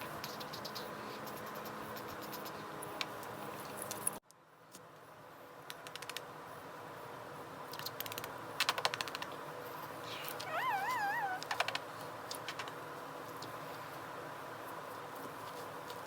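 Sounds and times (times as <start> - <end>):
cat meowing: 10.1 - 11.5.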